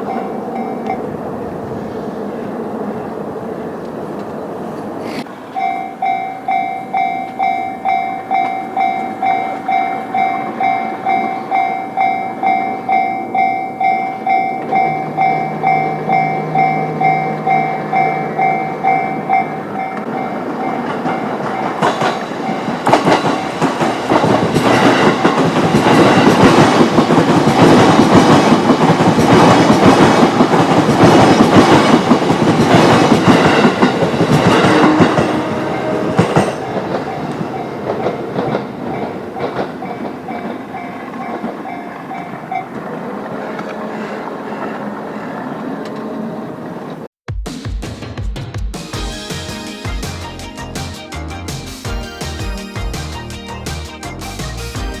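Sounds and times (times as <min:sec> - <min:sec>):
level-crossing warning bell: 0:00.0 - 0:01.2, 0:05.4 - 0:43.2
train wheels clattering: 0:13.8 - 0:44.9.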